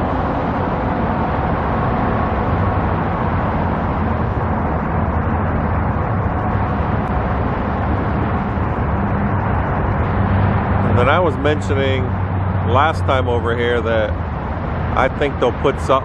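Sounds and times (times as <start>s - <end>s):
low engine hum: 0.0s - 16.0s
road traffic rumble: 0.0s - 16.0s.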